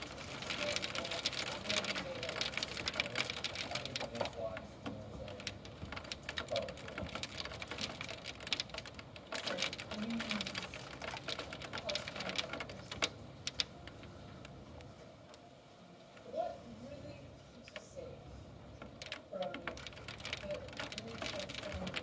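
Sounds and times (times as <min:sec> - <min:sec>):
hailstones hitting hard surfaces: 0:00.0 - 0:13.7, 0:18.8 - 0:22.0.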